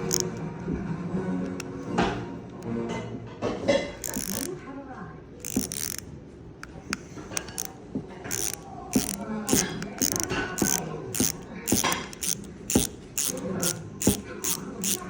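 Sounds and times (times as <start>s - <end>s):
sharp metal ticks: 0.0s - 0.3s, 4.0s - 4.5s, 5.4s - 6.0s, 8.3s - 15.0s
hand driver ratcheting clicks: 0.0s - 0.4s, 4.0s - 4.5s, 5.4s - 6.0s, 6.6s - 7.7s, 8.3s - 15.0s.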